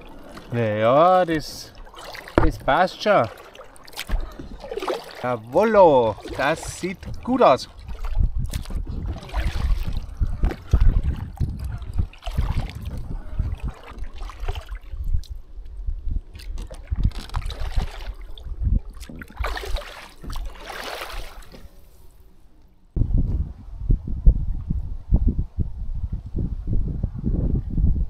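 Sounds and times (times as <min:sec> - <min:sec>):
paddle splashing in water: 0:00.0 - 0:15.4, 0:16.3 - 0:22.3
low rumble: 0:05.8 - 0:17.8, 0:23.0 - 0:28.0.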